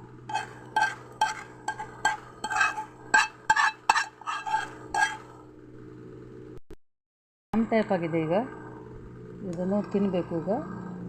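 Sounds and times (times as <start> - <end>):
spoon scraping a pot: 0.0 - 5.4.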